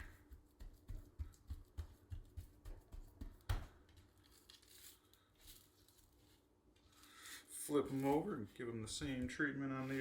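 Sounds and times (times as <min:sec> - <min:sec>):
hands slapping raw meat: 0:00.0 - 0:04.0
hands rubbing meat: 0:00.0 - 0:08.6.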